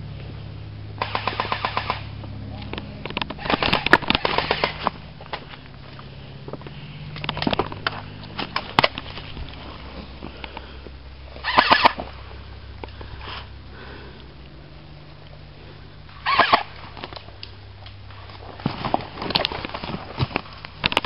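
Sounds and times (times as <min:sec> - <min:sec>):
low hum: 0:00.0 - 0:21.0
airsoft guns firing: 0:01.0 - 0:02.1, 0:03.4 - 0:05.0, 0:11.4 - 0:12.0, 0:16.2 - 0:16.8.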